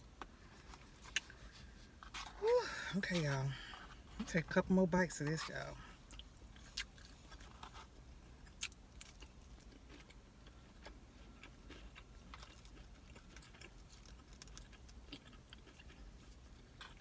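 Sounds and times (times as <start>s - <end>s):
person chewing food: 0.2s - 2.5s, 5.8s - 17.0s.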